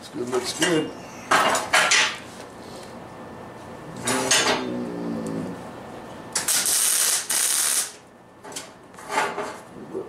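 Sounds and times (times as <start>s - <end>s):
loud harsh hiss: 6.5s - 8.0s.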